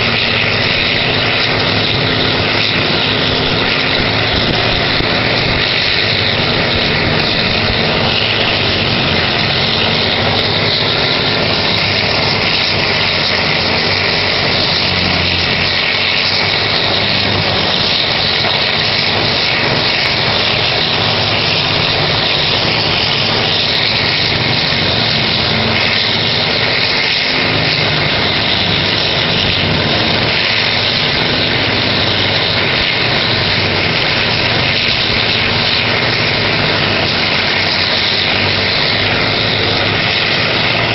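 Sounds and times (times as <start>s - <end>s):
heavy diesel engine drone: 0.0s - 40.9s
machine noise: 0.0s - 40.9s.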